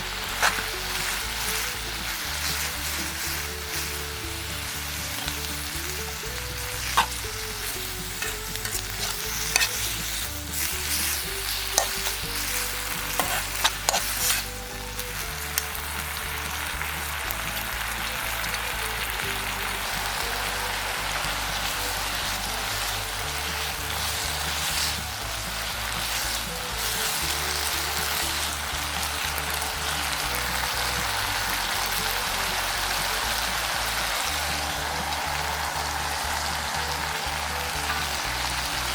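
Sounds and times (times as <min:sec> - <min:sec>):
background music with bass line: 0:00.0 - 0:38.9
food sizzling in a pan: 0:00.0 - 0:38.9
metal spatula clinking on pan: 0:06.8 - 0:14.5.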